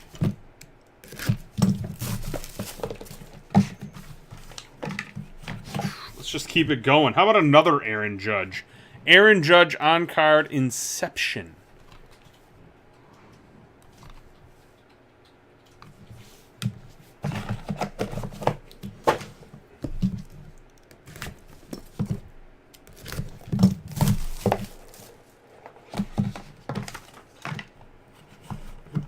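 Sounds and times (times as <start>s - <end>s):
cardboard and plastic packaging crinkling: 1.0s - 6.0s, 22.8s - 25.3s.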